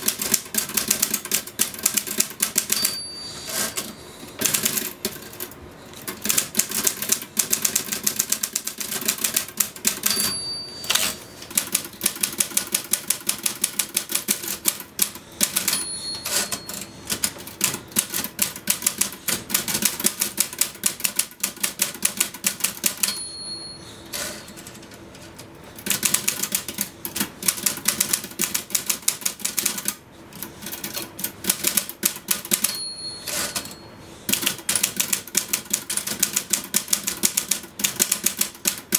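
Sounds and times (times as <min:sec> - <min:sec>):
typewriter keystrokes clacking: 0:00.0 - 0:03.0, 0:06.0 - 0:23.2, 0:25.8 - 0:33.7, 0:34.3 - 0:38.9
typewriter carriage return: 0:00.0 - 0:23.3, 0:24.1 - 0:38.9
typewriter bell ringing: 0:02.4 - 0:04.8, 0:09.9 - 0:11.8, 0:15.3 - 0:17.3, 0:22.8 - 0:24.8, 0:32.4 - 0:34.0.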